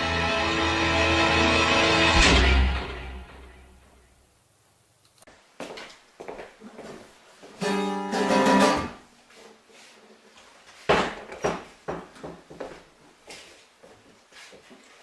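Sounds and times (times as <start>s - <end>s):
acoustic guitar plucking: 7.6s - 9.0s.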